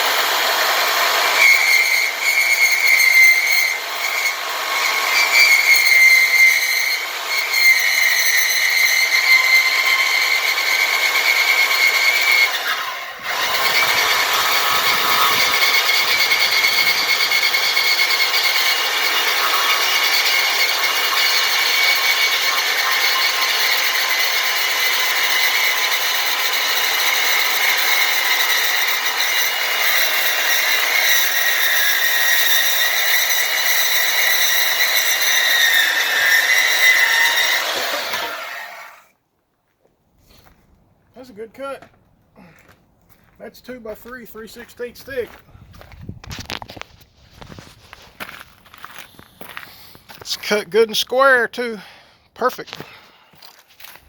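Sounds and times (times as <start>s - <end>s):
bandsaw cutting steel: 0.0s - 39.1s.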